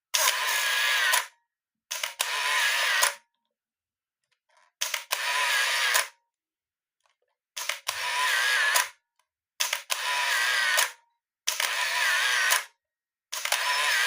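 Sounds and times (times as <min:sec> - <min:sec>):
camera film winder whir: 0:07.6 - 0:08.9, 0:09.7 - 0:12.7, 0:13.4 - 0:14.0
camera shutter click: 0:13.3 - 0:14.0.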